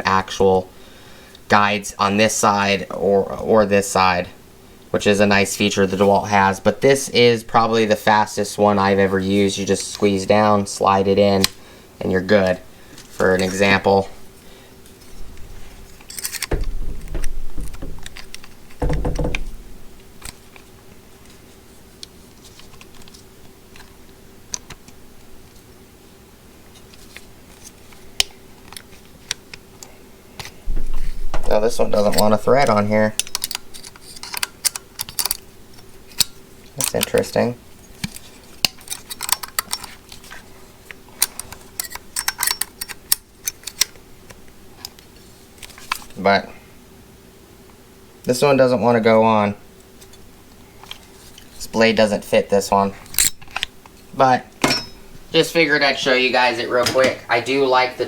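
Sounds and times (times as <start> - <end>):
metal tool clicks and clunks: 41.2 - 43.9, 53.1 - 53.7, 54.6 - 55.1.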